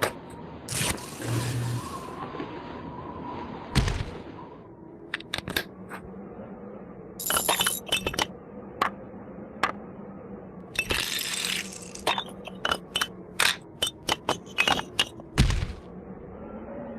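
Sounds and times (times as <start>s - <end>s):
jangling clatter: 7.2s - 8.2s
sharp clicks and clinks: 7.2s - 8.3s.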